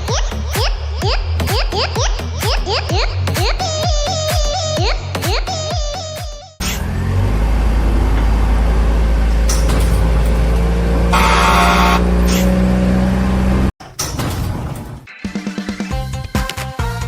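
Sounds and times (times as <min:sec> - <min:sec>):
heavy vehicle engine rumbling: 0:06.9 - 0:15.1.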